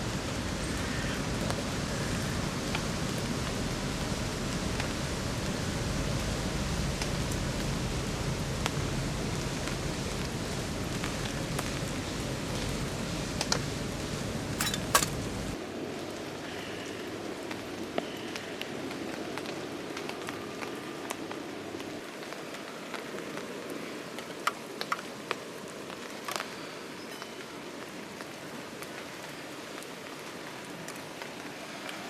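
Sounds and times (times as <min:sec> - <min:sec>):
steady rainfall: 0:00.0 - 0:32.0.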